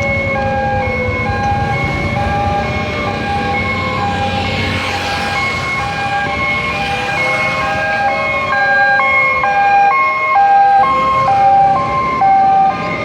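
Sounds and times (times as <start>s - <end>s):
rising and falling siren: 0.0s - 13.0s
two-tone hi-lo sirens: 0.0s - 13.0s.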